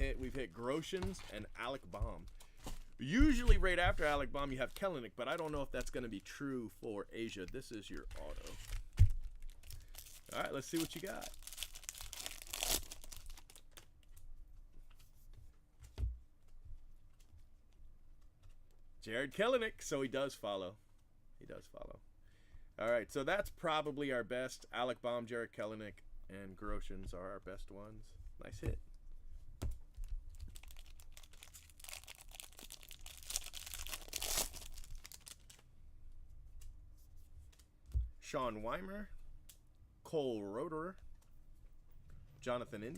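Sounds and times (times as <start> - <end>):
wrapper tearing and crinkling: 7.9 - 13.9, 30.3 - 35.6.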